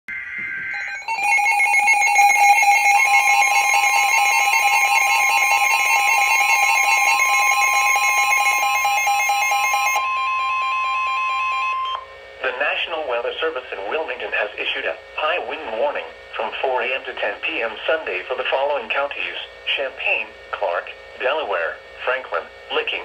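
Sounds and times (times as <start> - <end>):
harsh two-tone attention signal: 0.1 - 12.1
steady single-pitch warning tone: 0.1 - 17.4.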